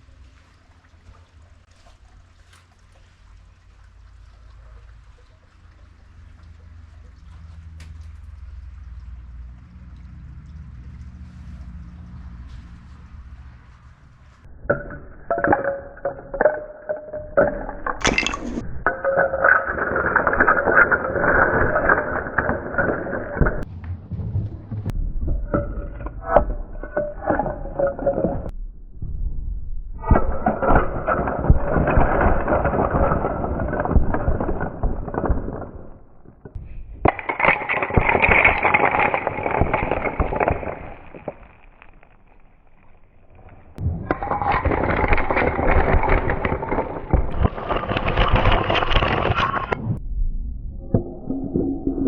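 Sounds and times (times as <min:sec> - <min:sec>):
marbles rolling down a track: 0:15.3 - 0:23.6, 0:37.0 - 0:42.1, 0:44.1 - 0:49.9.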